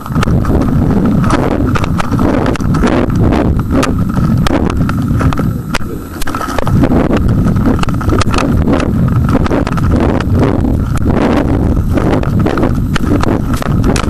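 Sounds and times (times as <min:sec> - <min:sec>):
camera rattling knocks and clicks: 0:00.0 - 0:14.0
wind rumbling on microphone: 0:00.0 - 0:14.0.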